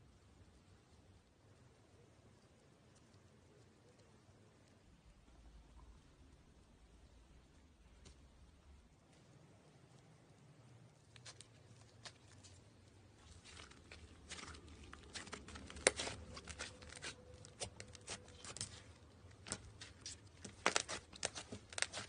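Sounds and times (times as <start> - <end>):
slime crackling and popping: 11.1 - 22.0
slime sticky tearing: 13.3 - 22.0.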